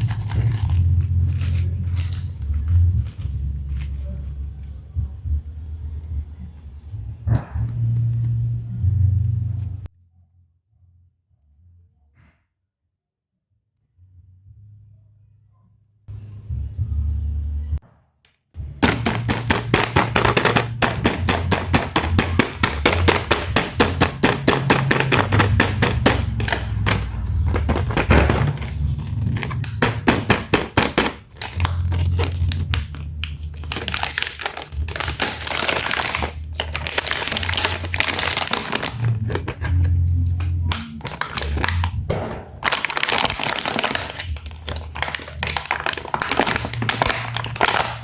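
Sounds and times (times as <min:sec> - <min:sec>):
plastic packaging crinkling: 0:00.0 - 0:04.2, 0:18.6 - 0:48.0.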